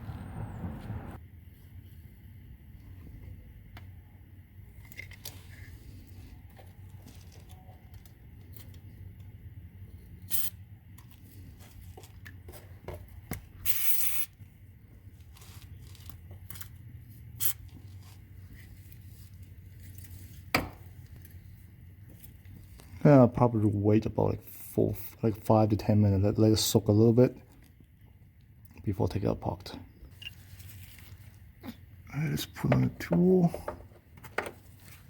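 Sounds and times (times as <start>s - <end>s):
aerosol can spraying: 10.3s - 10.6s, 13.6s - 14.3s.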